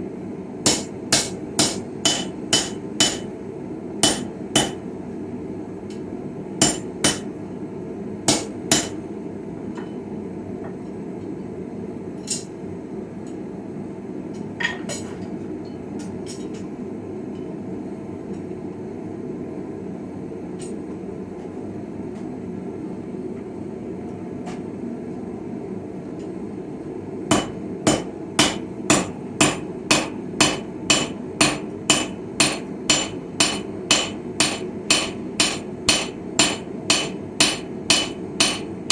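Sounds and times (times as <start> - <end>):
hammer striking metal on anvil: 0.7 - 3.3, 4.0 - 4.8, 6.6 - 7.3, 8.3 - 9.0, 27.3 - 38.9.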